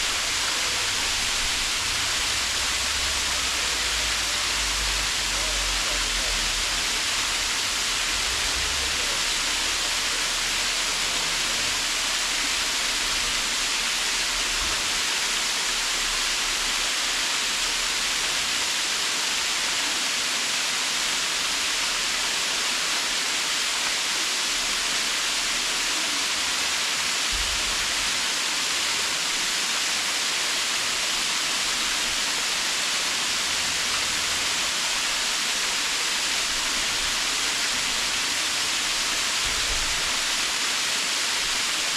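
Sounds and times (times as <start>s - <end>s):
waterfall rushing: 0.0s - 41.9s.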